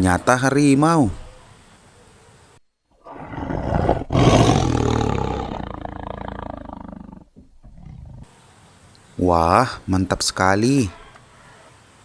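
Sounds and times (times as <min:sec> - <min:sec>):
tiger roar: 0:03.0 - 0:08.3.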